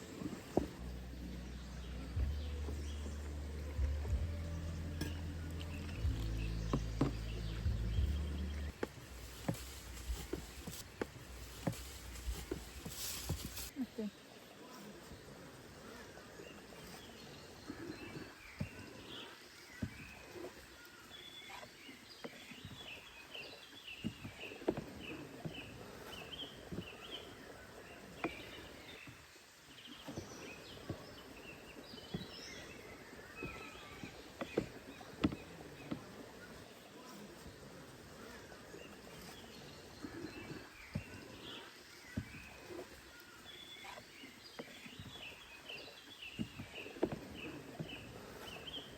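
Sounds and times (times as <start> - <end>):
faint outdoor hiss: 0.0 - 48.9
bird chirping: 0.6 - 10.8.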